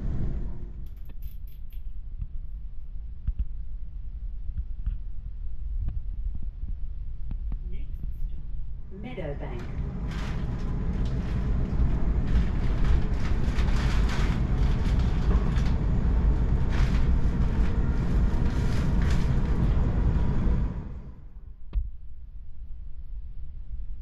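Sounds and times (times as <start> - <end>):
electric train rumbling: 0.0 - 0.8, 8.8 - 21.4.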